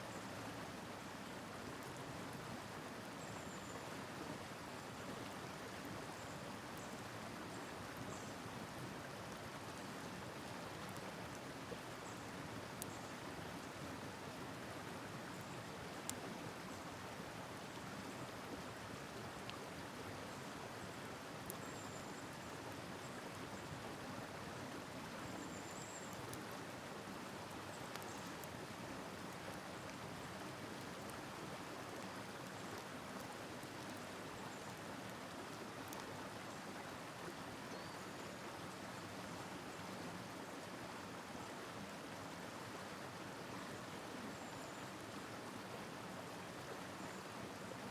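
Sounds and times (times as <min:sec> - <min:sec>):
campfire crackling: 0:26.2 - 0:34.0, 0:35.8 - 0:36.1.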